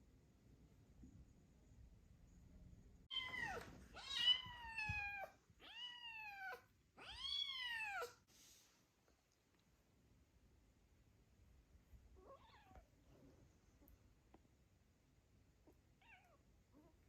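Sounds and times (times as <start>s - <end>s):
kitten meowing: 3.1s - 8.2s, 12.2s - 12.8s.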